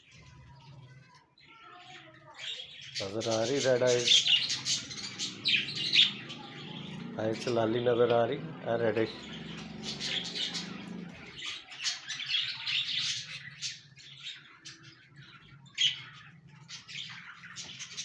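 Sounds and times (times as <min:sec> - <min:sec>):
budgerigars chirping: 0:02.3 - 0:18.0.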